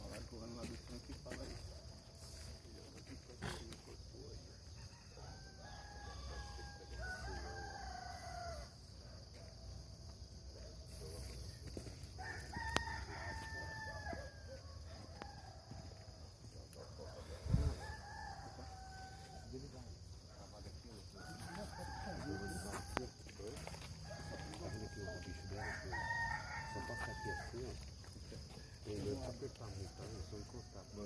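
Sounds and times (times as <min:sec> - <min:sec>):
rooster crowing: 0:04.7 - 0:09.3, 0:12.1 - 0:16.3, 0:17.0 - 0:20.0, 0:21.0 - 0:31.0.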